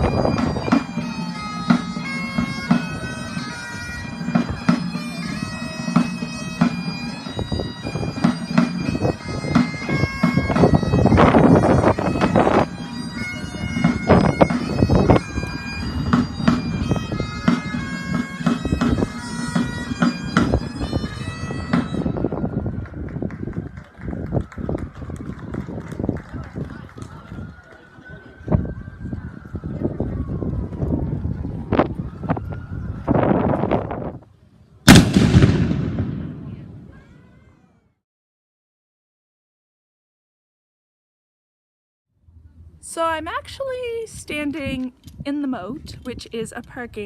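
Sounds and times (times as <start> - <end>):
bagpipes playing a tune: 0.0 - 22.8.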